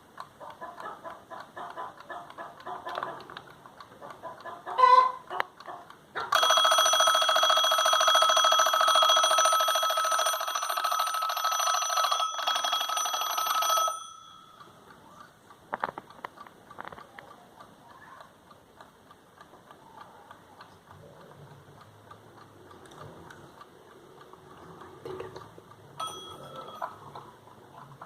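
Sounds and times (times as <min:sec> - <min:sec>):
clock clicks: 0:00.0 - 0:28.0
alarm clock bell ringing: 0:06.3 - 0:14.8, 0:26.0 - 0:27.2.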